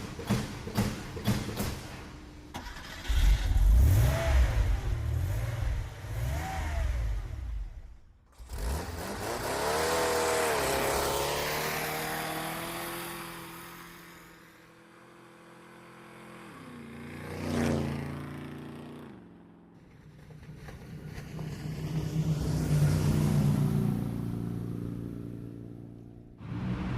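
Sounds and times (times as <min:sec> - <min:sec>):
engine revving: 0:02.6 - 0:14.5, 0:26.4 - 0:26.9
car passing by: 0:20.4 - 0:25.2, 0:26.4 - 0:26.9.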